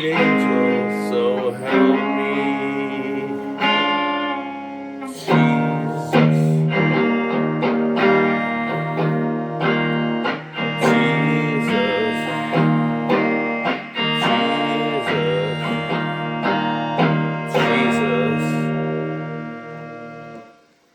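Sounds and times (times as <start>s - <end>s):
wavering melodic line: 0.0s - 20.5s
plucked guitar chords: 0.0s - 20.9s.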